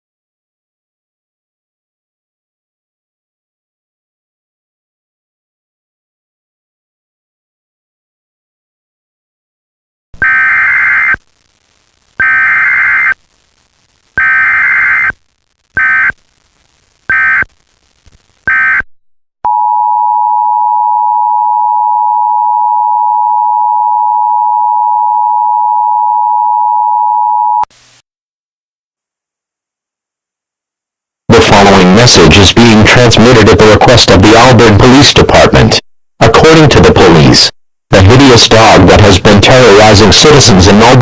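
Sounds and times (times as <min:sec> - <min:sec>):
warbling data bursts: 0:10.2 - 0:11.4, 0:12.1 - 0:13.2, 0:14.1 - 0:15.2, 0:15.8 - 0:16.2, 0:17.1 - 0:17.5.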